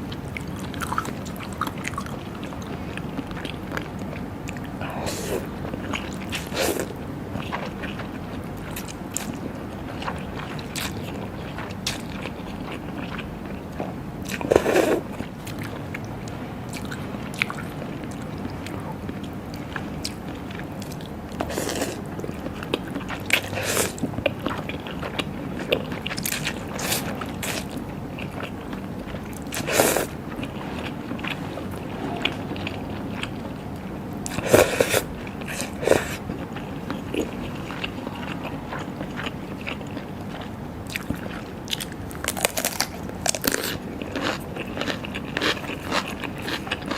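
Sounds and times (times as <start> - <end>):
wet chewing: 0.0 - 46.9.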